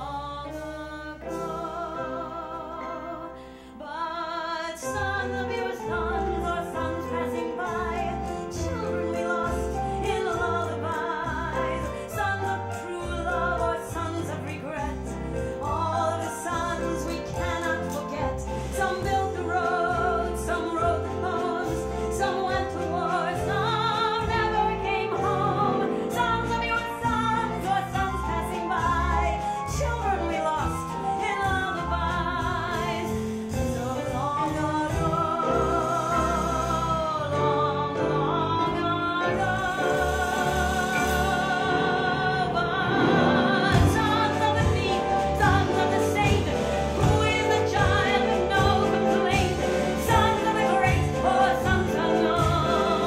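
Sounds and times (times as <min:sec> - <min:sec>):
melody with heavy vibrato: 0:39.2 - 0:47.0.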